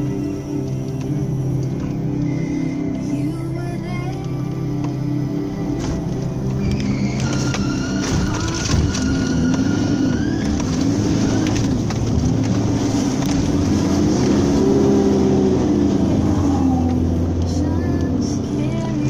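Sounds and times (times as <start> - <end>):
low rumble: 0.0 - 19.0
vehicle creaking and grinding: 0.0 - 19.0
rising and falling pitched tone: 4.4 - 19.0.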